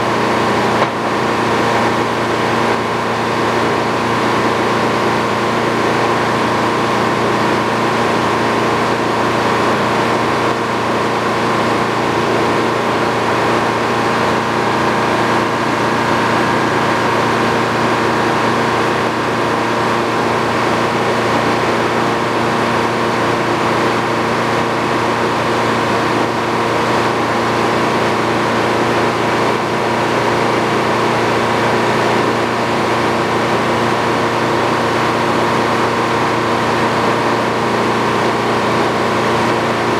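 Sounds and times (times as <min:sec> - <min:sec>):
sawmill cutting wood: 0:00.0 - 0:04.9.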